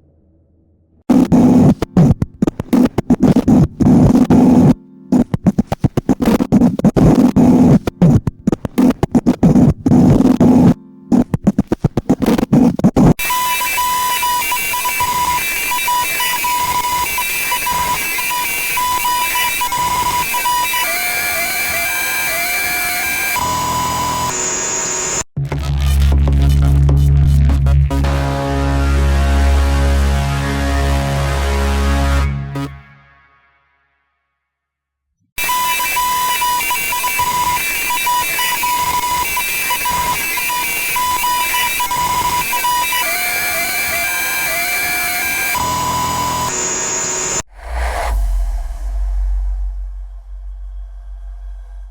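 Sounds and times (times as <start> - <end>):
electronic beeps: 13.2 - 25.2, 35.4 - 47.4
loud static hiss: 14.1 - 25.2, 35.9 - 51.9
higher flickering tones: 47.4 - 51.9
low wavering tone: 47.5 - 51.9.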